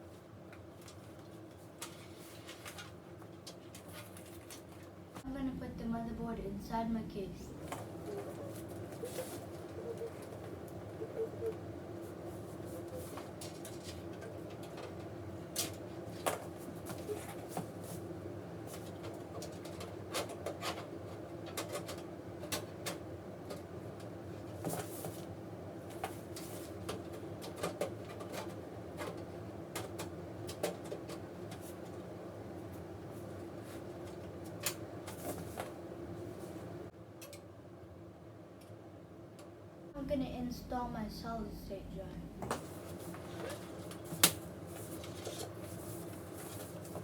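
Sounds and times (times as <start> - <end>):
steady low hum: 0.0 - 47.0
clicks and knocks of computer parts: 18.8 - 23.7.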